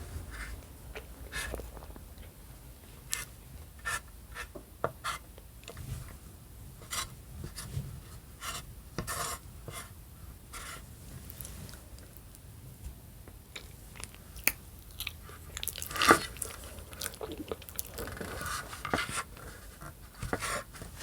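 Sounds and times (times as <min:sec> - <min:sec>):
crunchy eating mouth noises: 0:13.6 - 0:18.6.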